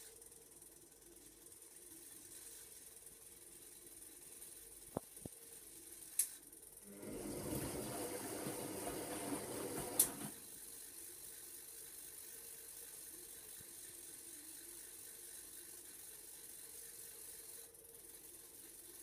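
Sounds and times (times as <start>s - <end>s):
washing machine water inflow: 6.8s - 10.4s.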